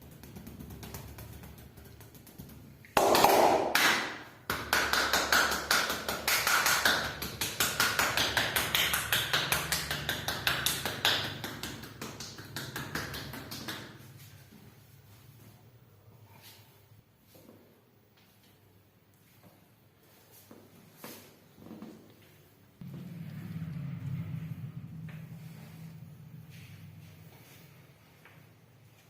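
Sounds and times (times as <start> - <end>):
hands slapping body rhythmically: 0.0 - 14.5.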